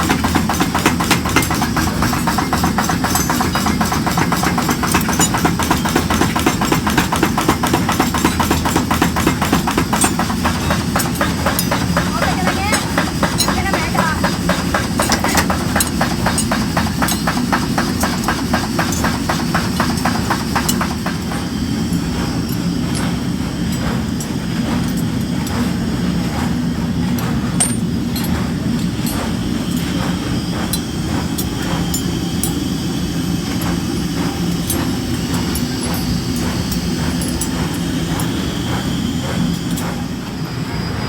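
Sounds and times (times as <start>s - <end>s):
sharp metal knocks: 0.0s - 21.5s
machinery humming: 0.0s - 41.0s.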